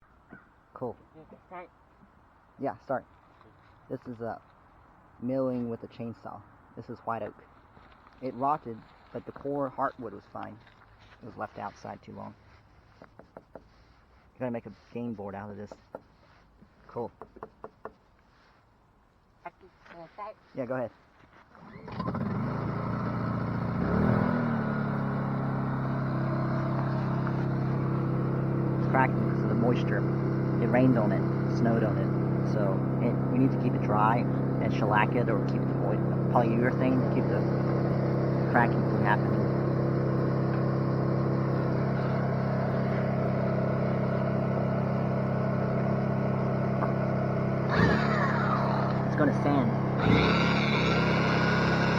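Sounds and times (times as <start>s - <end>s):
chainsaw cutting log: 21.5s - 51.9s.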